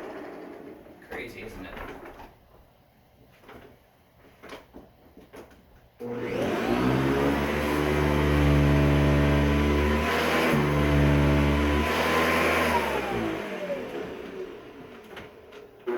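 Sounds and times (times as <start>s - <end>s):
vacuum cleaner motor whining: 6.0s - 15.9s.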